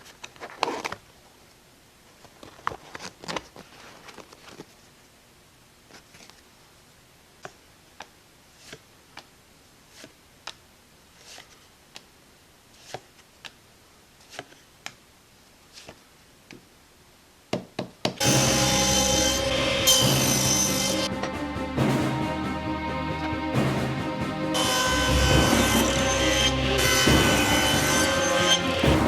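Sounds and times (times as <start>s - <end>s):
loud music: 18.2s - 29.0s.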